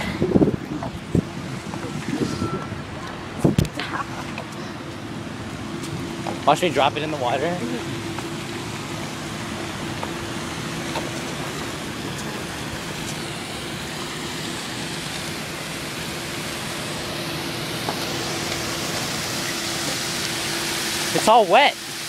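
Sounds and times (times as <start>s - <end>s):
waterfall rushing: 6.1s - 22.0s.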